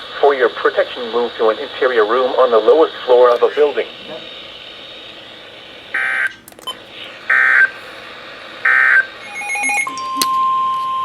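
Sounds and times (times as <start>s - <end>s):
radio hiss: 0.0s - 9.8s
digital data tone bursts: 8.6s - 11.0s.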